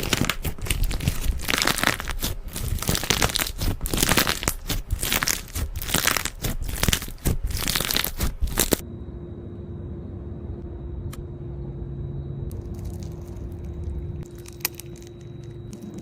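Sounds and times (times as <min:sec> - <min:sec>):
slime crunchy crackling: 0:00.0 - 0:08.8, 0:12.5 - 0:16.0
faint steady hum: 0:00.0 - 0:16.0.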